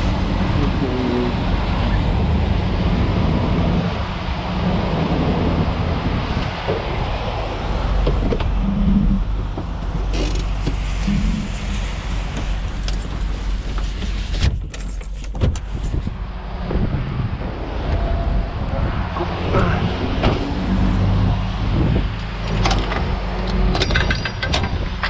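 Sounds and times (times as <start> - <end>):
truck engine running: 0.0 - 25.0
sharp clicks and knocks: 22.2 - 25.0.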